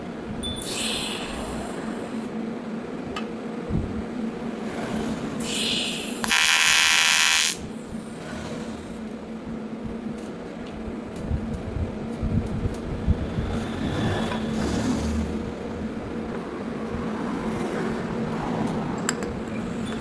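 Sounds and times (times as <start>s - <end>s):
welder electrical hum: 0.0s - 2.5s, 5.2s - 10.3s
harsh welding arc buzz: 0.6s - 2.3s, 5.4s - 9.0s
high hiss: 0.6s - 2.3s, 5.4s - 7.9s.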